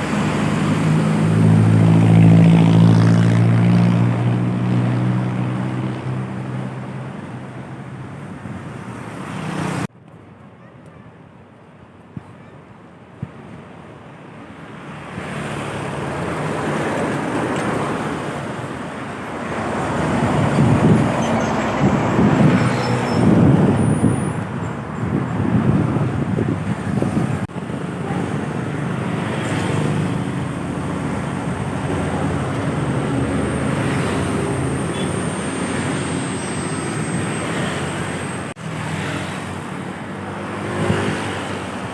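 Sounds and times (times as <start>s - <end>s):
traffic drone: 0.0s - 41.9s
heavy vehicle engine running: 16.9s - 38.8s.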